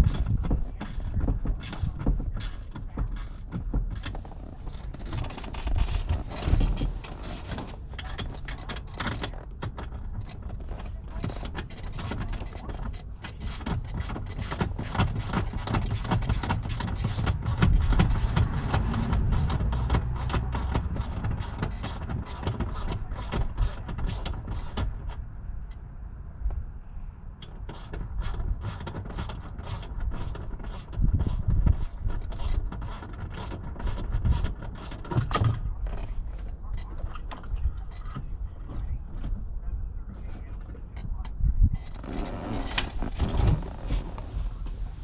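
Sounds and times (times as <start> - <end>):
low rumble: 17.4 - 21.6.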